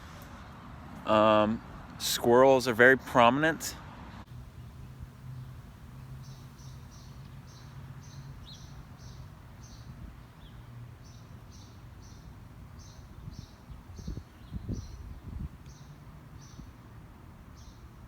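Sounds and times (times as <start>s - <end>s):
steady low hum: 4.3s - 18.0s.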